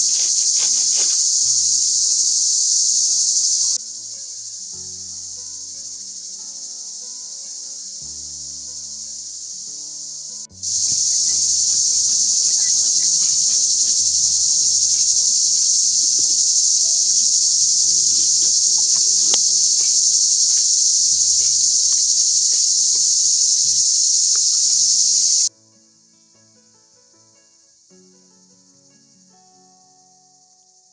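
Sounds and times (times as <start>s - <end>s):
insects chirring: 0.0s - 25.5s, 27.7s - 30.9s
soft background music: 3.8s - 20.3s, 25.5s - 30.8s.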